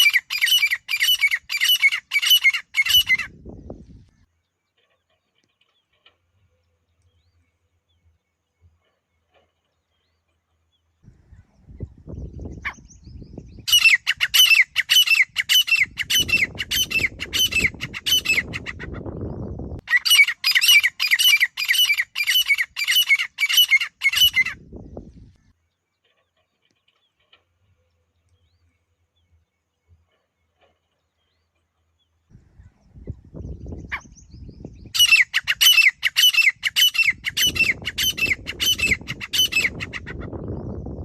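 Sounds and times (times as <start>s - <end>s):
bird harsh repeated call: 0.0s - 3.3s, 13.6s - 18.9s, 19.8s - 24.6s, 34.9s - 40.4s.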